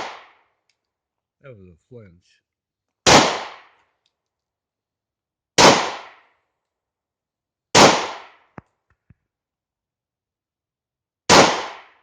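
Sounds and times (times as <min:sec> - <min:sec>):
pistol shots: 0:00.0 - 0:00.4, 0:03.0 - 0:03.8, 0:05.6 - 0:06.3, 0:07.7 - 0:08.6, 0:11.3 - 0:12.0.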